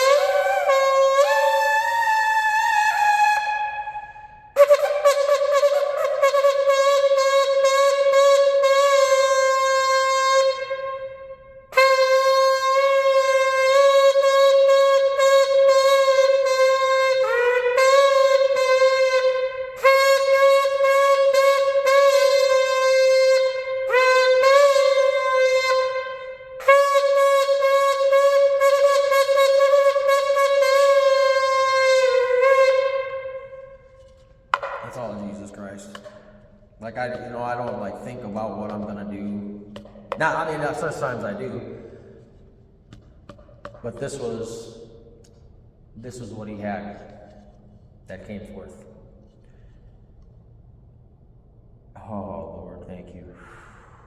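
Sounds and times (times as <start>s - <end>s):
shofar blasts: 0.0s - 42.4s.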